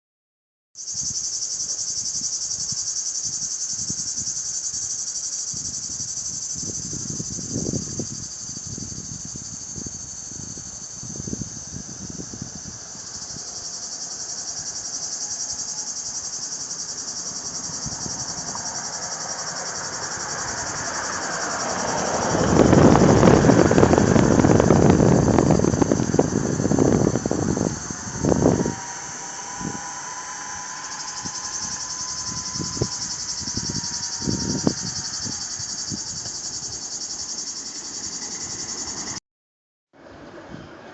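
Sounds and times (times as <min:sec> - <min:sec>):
cicadas buzzing: 0:00.8 - 0:39.2
broad rushing noise: 0:17.2 - 0:39.2
low rumbles: 0:21.8 - 0:36.6.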